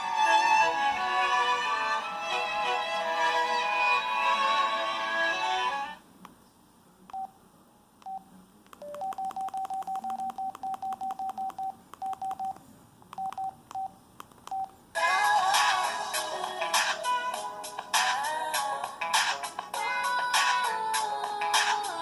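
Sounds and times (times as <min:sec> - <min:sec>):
phone keypad beeps: 0:07.1 - 0:07.3, 0:08.0 - 0:08.2, 0:08.8 - 0:12.6, 0:13.2 - 0:14.8
ringtone music: 0:15.0 - 0:22.0.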